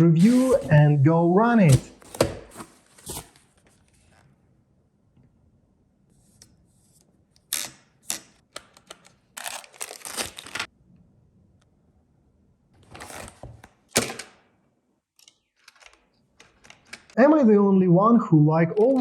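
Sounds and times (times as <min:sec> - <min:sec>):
scratchy packaging rustling: 0:00.0 - 0:04.2, 0:09.0 - 0:10.7
cardboard box scraping: 0:00.2 - 0:01.0.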